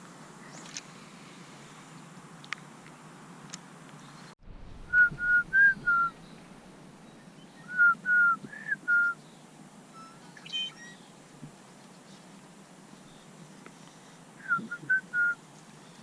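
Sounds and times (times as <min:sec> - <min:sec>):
whistled notes: 0:04.9 - 0:09.2, 0:14.4 - 0:15.4.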